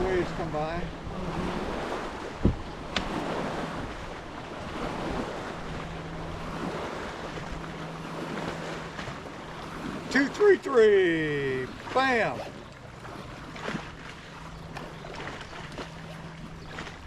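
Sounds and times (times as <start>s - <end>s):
wind buffeting microphone: 0.0s - 10.1s
low steady hum: 0.0s - 17.0s
waves slapping against boat hull: 0.0s - 17.0s
low thump: 2.4s - 3.2s.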